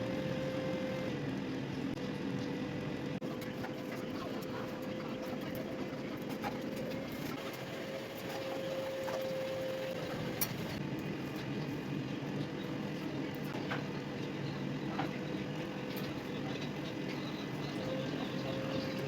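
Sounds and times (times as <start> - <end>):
air fryer fan whirring: 0.0 - 19.0.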